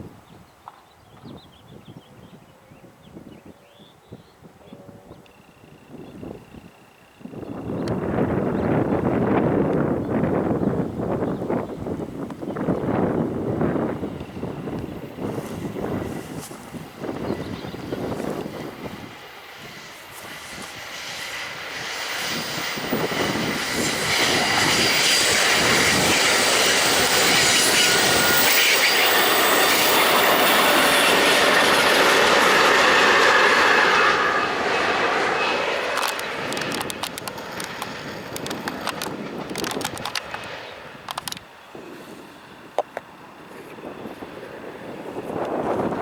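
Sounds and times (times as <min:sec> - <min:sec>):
train wheels rushing on rail: 0:13.3 - 0:43.3.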